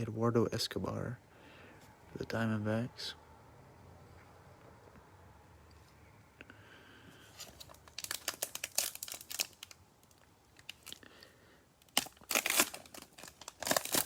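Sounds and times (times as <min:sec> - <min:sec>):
cellophane wrapper crinkling and tearing: 0:07.4 - 0:14.0.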